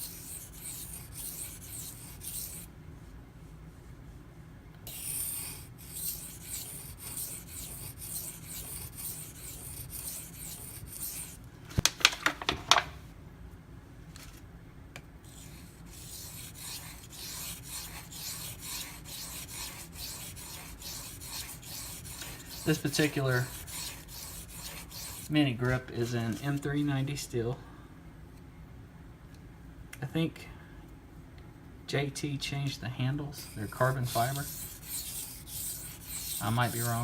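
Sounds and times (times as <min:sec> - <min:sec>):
knife rubbing on whetstone: 0:00.0 - 0:02.7, 0:04.9 - 0:11.4, 0:15.3 - 0:26.7, 0:33.3 - 0:37.0.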